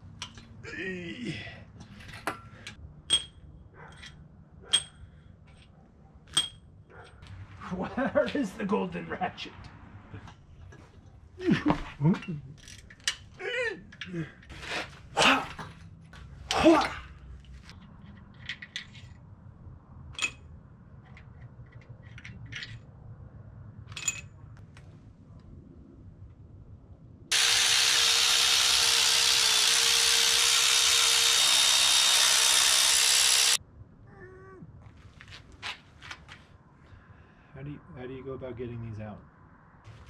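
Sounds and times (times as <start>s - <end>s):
tools clinking on metal: 1.8s - 5.7s, 6.3s - 7.2s
power ratchet running: 27.3s - 33.6s.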